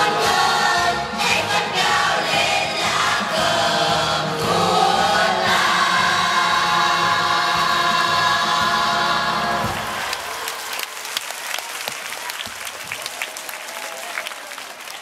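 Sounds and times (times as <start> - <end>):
choir singing in parts: 0.0 - 10.2.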